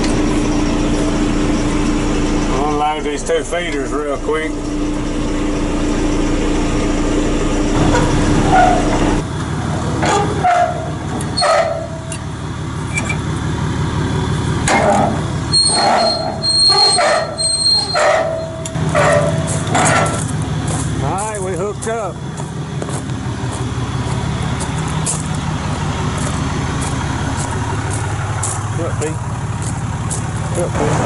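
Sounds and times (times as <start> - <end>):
truck engine running: 0.0 - 31.0
metallic clanks and knocks: 7.8 - 12.3, 14.6 - 21.4.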